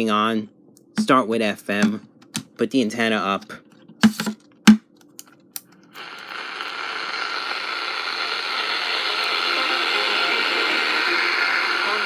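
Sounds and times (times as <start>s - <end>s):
radio static hiss: 6.0s - 12.0s.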